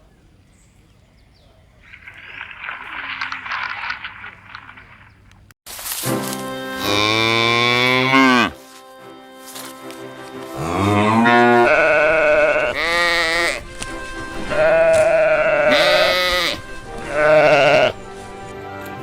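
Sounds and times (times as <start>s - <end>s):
farm animal bleating: 6.8s - 8.6s, 10.6s - 13.7s, 14.5s - 18.1s.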